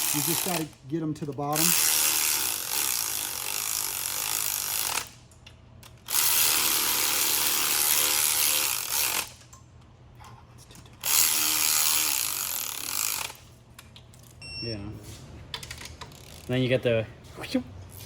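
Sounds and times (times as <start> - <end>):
power tool running nuts down: 0.0 - 0.7.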